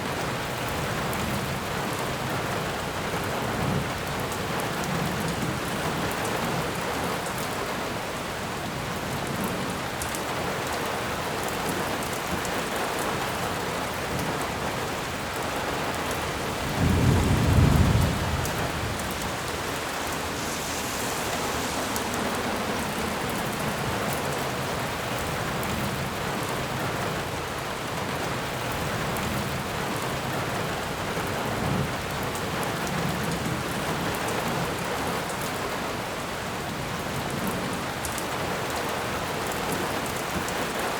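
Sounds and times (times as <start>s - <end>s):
rain falling: 0.0s - 40.9s
low rumble of thunder: 15.0s - 35.4s.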